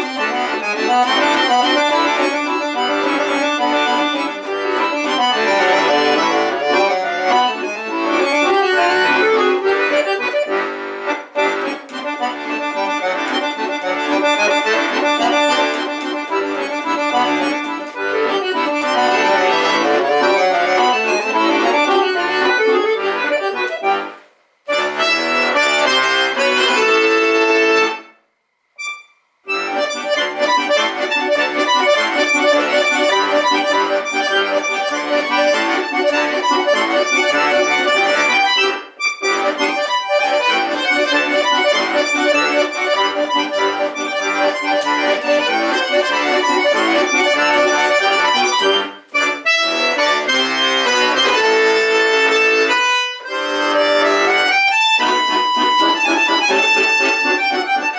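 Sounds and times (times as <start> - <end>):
accordion playing a tune: 0.0 - 57.9.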